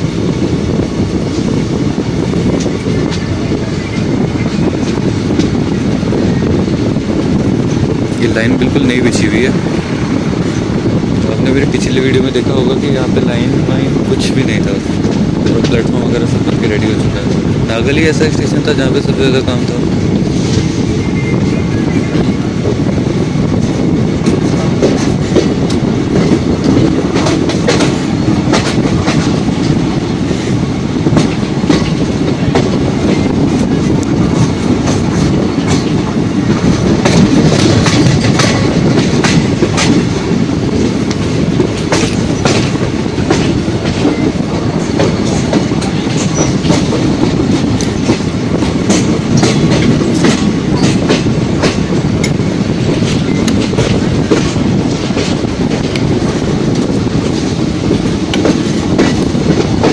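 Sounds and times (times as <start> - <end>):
train rolling rumble: 0.0 - 59.9.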